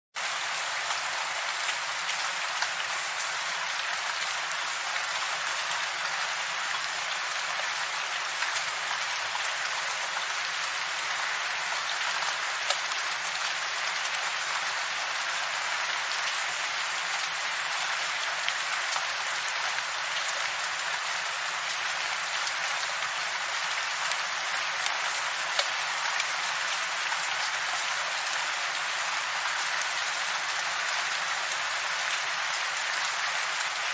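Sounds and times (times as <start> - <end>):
steady rain falling: 0.2 - 33.9
raindrop ticks: 11.9 - 13.4, 24.0 - 28.4.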